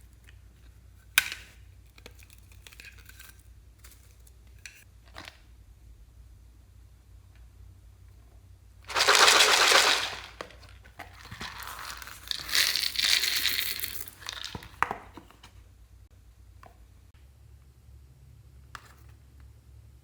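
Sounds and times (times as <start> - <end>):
crinkling and rustling: 8.9 - 15.6.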